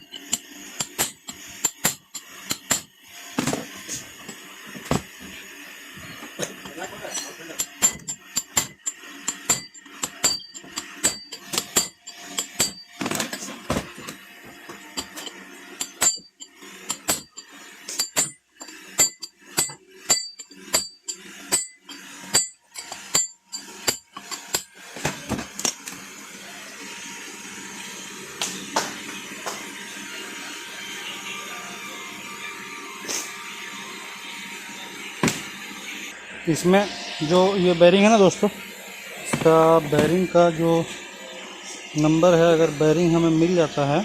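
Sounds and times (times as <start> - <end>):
tools tapping on metal: 0.0 - 3.7, 6.4 - 25.2.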